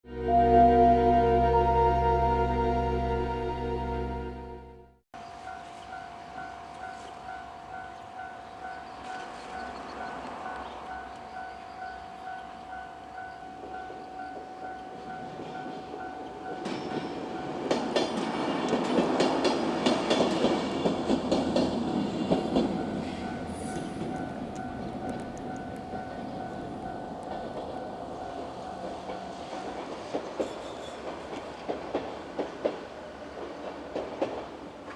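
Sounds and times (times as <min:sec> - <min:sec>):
level-crossing bell dinging: 0:00.1 - 0:04.9.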